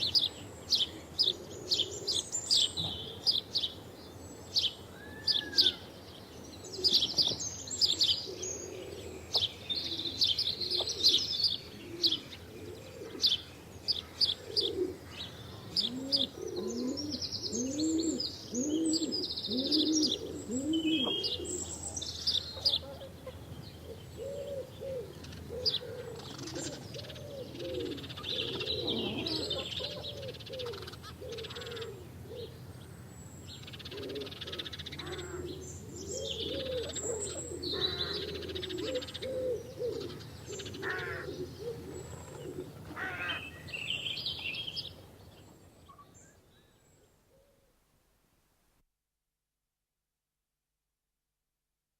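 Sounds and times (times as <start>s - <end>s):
sparrows chirping: 0.0s - 47.2s
lower bird call: 4.9s - 5.9s.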